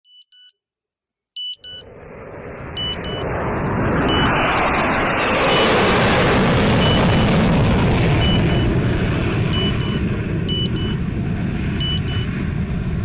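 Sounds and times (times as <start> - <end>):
high electronic alarm beeps: 0.0 - 0.5, 1.4 - 1.9, 2.8 - 3.3, 4.0 - 4.8, 5.4 - 6.2, 6.8 - 7.4, 8.2 - 8.8, 9.5 - 11.0, 11.8 - 12.4
jet aircraft roar: 1.6 - 13.0.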